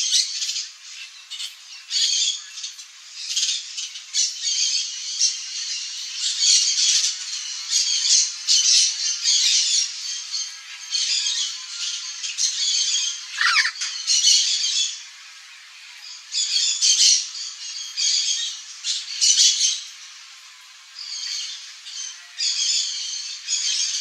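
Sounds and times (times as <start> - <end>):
parrot squawking: 13.3 - 13.9.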